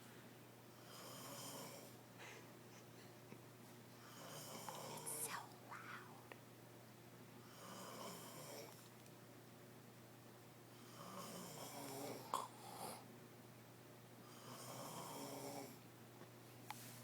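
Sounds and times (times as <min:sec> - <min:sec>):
woman snoring: 0:00.8 - 0:01.9, 0:04.0 - 0:06.2, 0:07.5 - 0:08.7, 0:10.9 - 0:13.0, 0:14.4 - 0:15.8.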